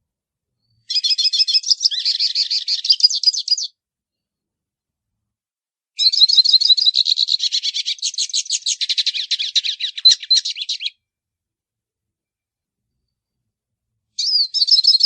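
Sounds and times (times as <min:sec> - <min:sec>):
bird twittering song: 0:00.6 - 0:03.8, 0:06.0 - 0:11.0, 0:14.2 - 0:15.0.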